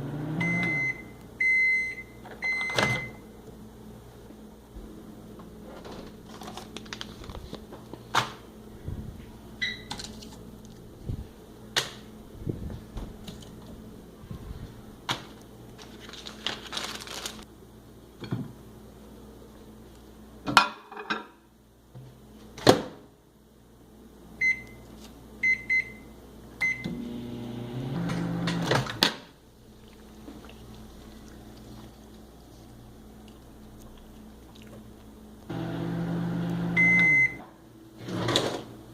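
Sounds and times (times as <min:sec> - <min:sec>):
microwave oven humming: 0:00.0 - 0:15.8, 0:24.0 - 0:38.9
keypad beeps: 0:36.8 - 0:37.4.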